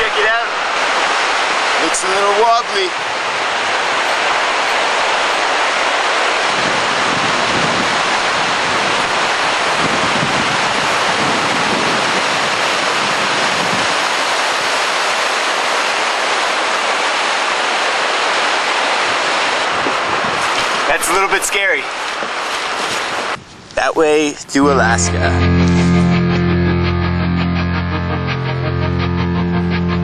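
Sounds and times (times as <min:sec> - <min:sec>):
wind rush on microphone: 0:02.9 - 0:24.6.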